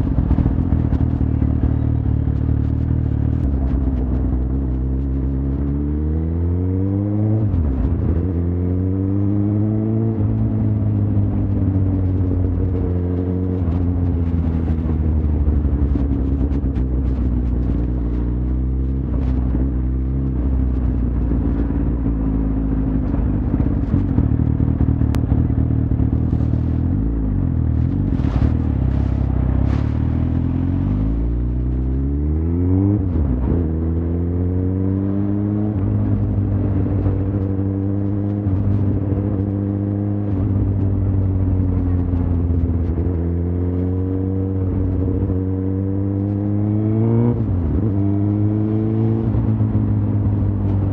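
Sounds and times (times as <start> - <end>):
motorcycle engine accelerating: 0.0 - 50.9
steady rushing noise: 20.4 - 32.4.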